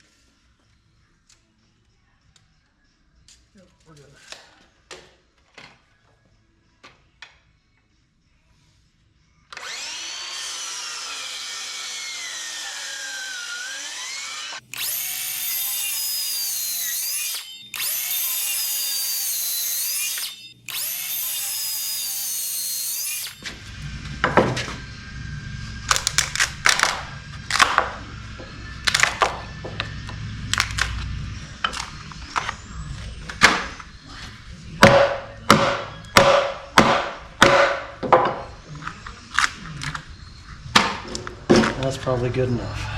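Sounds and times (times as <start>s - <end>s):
circular saw cutting wood: 9.6s - 42.9s.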